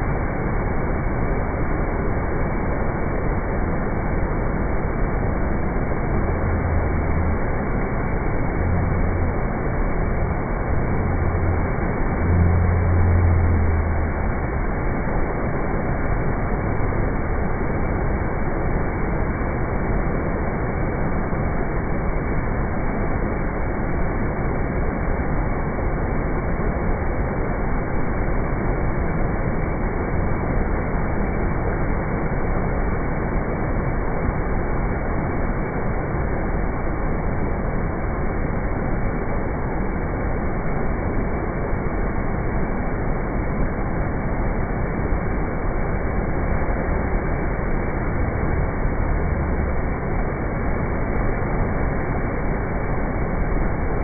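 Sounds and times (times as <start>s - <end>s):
low rumbles: 0.0s - 20.9s
flood water rushing: 0.0s - 54.0s.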